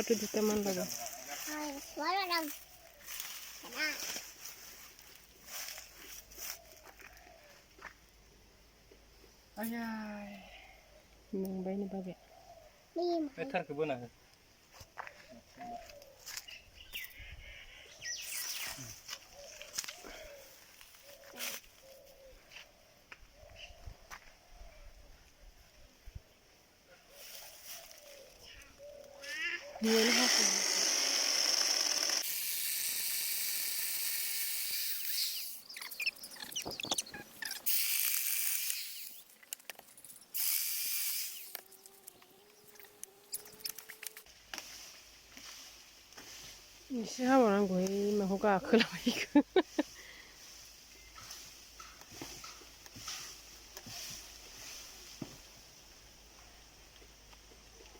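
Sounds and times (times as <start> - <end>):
birds chirping: 10.7 - 25.1, 35.0 - 37.8, 38.9 - 55.2
electric chainsaw running: 29.8 - 35.2.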